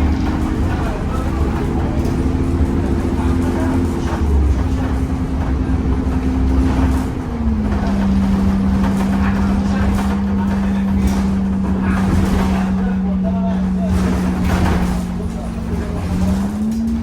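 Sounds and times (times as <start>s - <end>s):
bus engine rumble: 0.0s - 17.0s.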